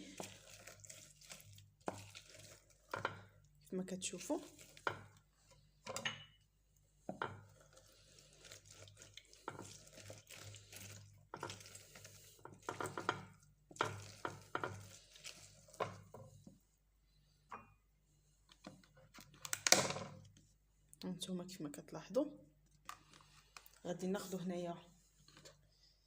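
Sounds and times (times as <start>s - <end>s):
orange squeezed on juicer: 7.4s - 16.4s.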